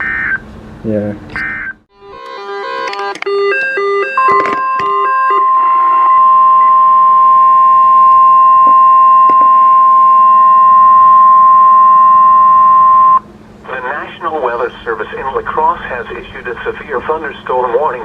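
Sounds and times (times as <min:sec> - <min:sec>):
steady warning alarm tone: 0:01.4 - 0:13.2
stepped electronic beeps: 0:02.6 - 0:13.2.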